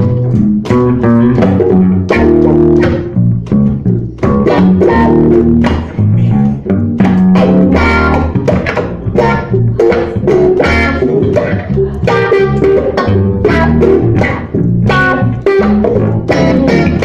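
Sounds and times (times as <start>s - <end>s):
bass guitar line: 0.0s - 17.0s
plucked guitar: 0.0s - 17.0s.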